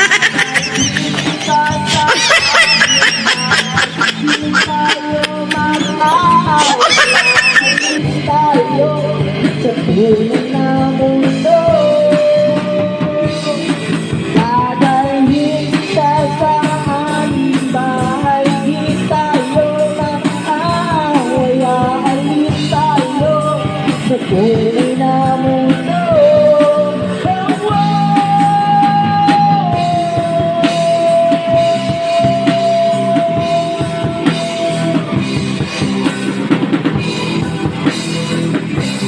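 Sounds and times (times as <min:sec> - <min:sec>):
drum beat: 0:00.0 - 0:08.0
rock band playing live: 0:00.0 - 0:39.0.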